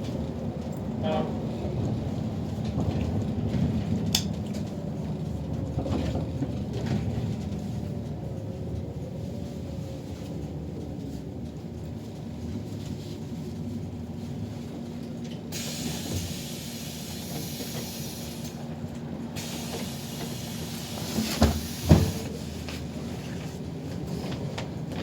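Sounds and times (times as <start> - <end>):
bus engine hum: 0.0 - 25.0
hiss: 15.5 - 18.6, 19.4 - 22.4.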